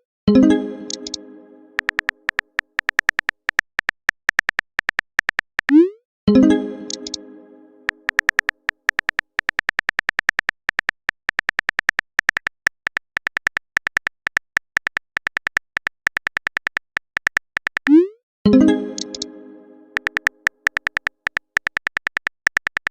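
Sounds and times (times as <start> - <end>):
phone keyboard typing clicks: 0.9 - 1.2, 1.8 - 5.8, 6.9 - 7.2, 7.9 - 18.0, 19.0 - 19.3, 20.0 - 22.9.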